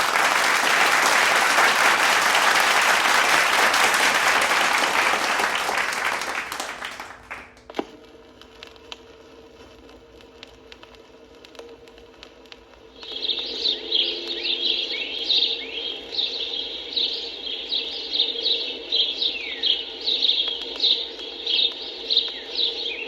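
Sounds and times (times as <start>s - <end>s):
vinyl record crackle: 0.0s - 23.0s
low steady hum: 7.0s - 23.0s.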